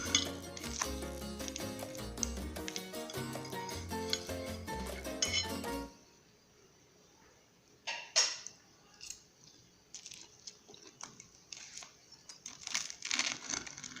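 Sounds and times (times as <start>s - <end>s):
bread bites: 0.0s - 3.4s, 9.9s - 14.0s
soft crackly chewing: 8.9s - 14.0s.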